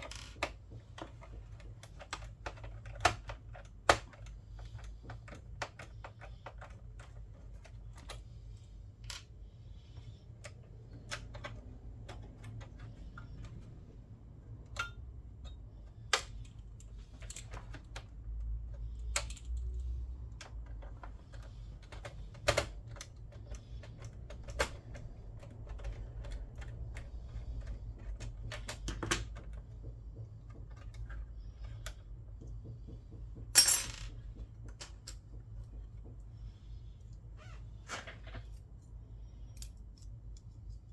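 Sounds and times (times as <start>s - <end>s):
metal parts clattering: 33.5s - 34.2s
screws and metal parts clinking: 33.5s - 35.2s.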